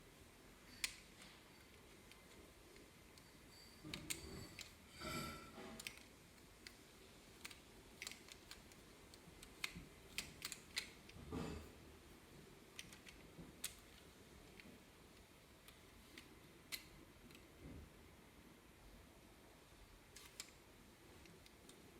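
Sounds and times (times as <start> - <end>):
plastic toy mechanism clicking: 0.8 - 1.0, 5.8 - 6.8, 7.4 - 11.2, 12.7 - 17.4, 20.1 - 20.6.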